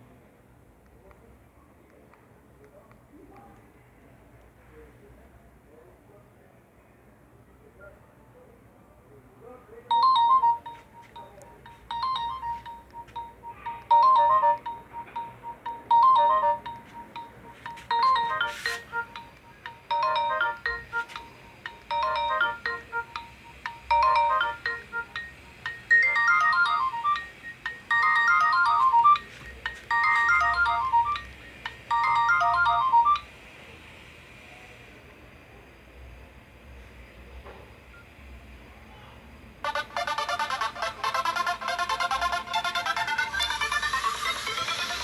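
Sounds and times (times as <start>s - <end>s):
mobile phone ringtone melody: 9.9s - 33.3s, 39.6s - 45.0s.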